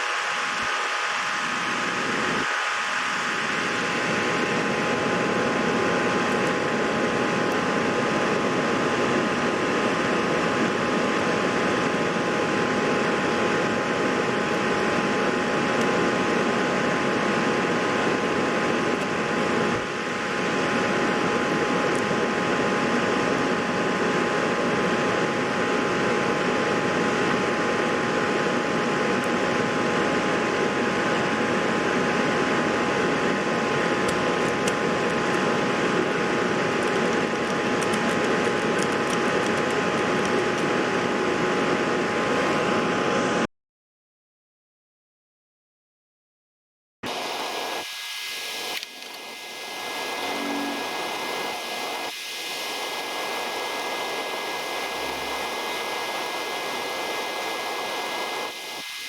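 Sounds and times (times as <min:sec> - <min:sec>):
fan noise: 0:00.2 - 0:43.4
constant high tones: 0:48.6 - 0:57.4.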